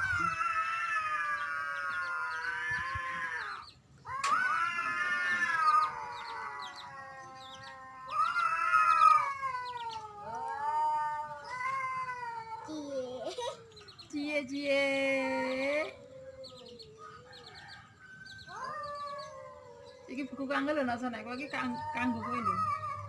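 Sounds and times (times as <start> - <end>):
cat yowling: 0.0 - 13.1, 18.5 - 23.0.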